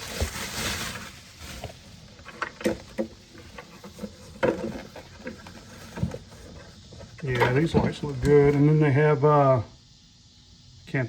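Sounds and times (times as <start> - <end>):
packaging rustling: 0.0 - 8.6.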